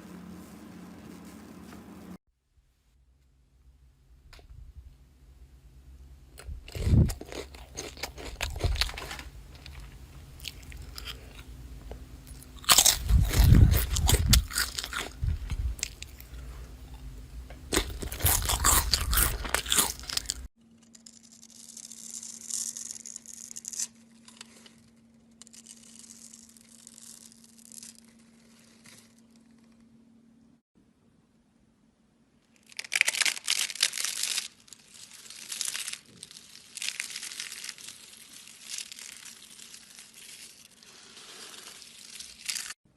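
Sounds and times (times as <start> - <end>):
faint steady hum: 0.0 - 42.9
slime crackling and crunching: 6.6 - 11.5, 12.3 - 16.4, 17.6 - 29.6, 32.6 - 42.8
slime hissing squishes: 33.6 - 42.8.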